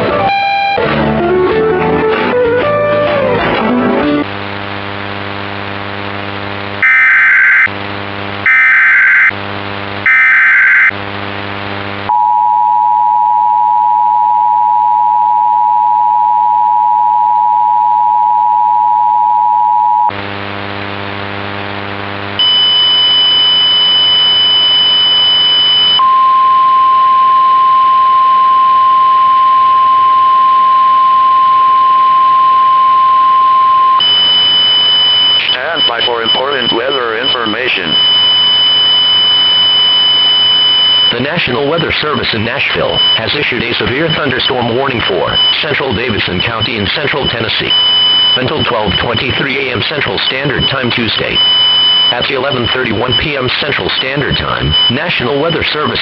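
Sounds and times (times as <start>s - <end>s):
long steady high beep: 0.3s - 0.8s, 6.8s - 7.7s, 8.5s - 9.4s, 10.1s - 11.0s, 12.1s - 20.2s, 22.4s - 41.2s, 42.8s - 43.4s, 45.0s - 49.6s, 50.3s - 53.2s, 54.2s - 55.1s
two-tone attention signal: 0.3s - 0.8s, 22.4s - 41.2s, 45.1s - 49.7s, 50.3s - 53.3s, 54.1s - 55.2s
steady electrical buzz: 4.2s - 12.1s, 20.0s - 53.1s
screechy data tone bursts: 6.8s - 7.7s, 8.5s - 9.4s, 10.0s - 11.0s, 22.4s - 41.2s.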